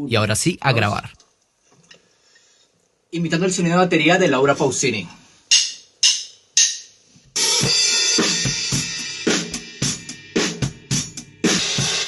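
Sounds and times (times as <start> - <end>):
drum kit playing: 7.4 - 12.0.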